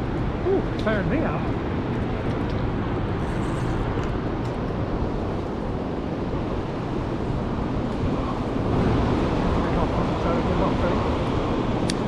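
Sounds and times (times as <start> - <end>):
river current rushing: 5.0 - 11.9.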